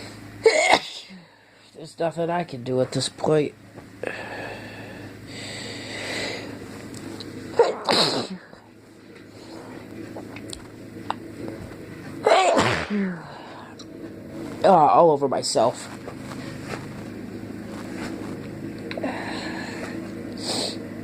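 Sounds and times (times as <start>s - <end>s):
man sneezing: 0.4s - 1.3s, 7.5s - 8.5s, 12.2s - 13.4s.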